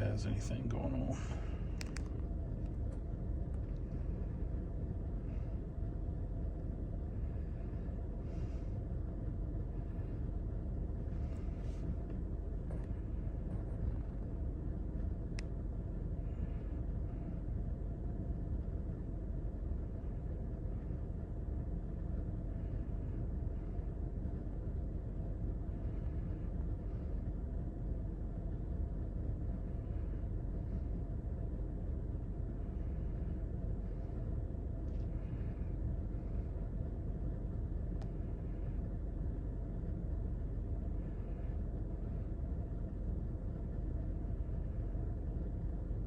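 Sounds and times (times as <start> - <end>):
low rumble in car cabin: 0.0 - 46.0
faint tick: 1.8 - 3.8, 15.3 - 15.5, 38.0 - 38.2.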